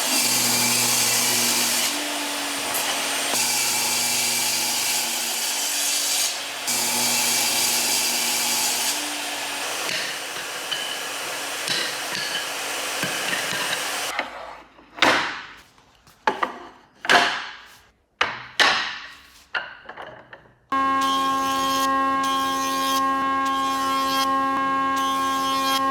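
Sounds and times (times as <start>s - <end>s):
power tool running: 0.0s - 14.1s, 20.8s - 25.4s.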